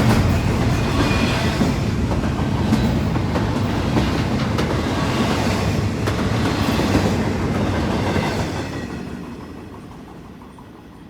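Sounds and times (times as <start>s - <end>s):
freight train wheels clacking: 0.0s - 11.0s.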